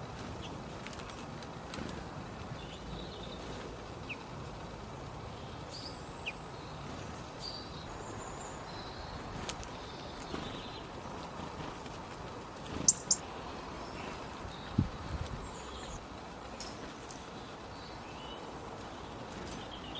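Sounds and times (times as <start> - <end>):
songbirds chirping: 0.0 - 19.9.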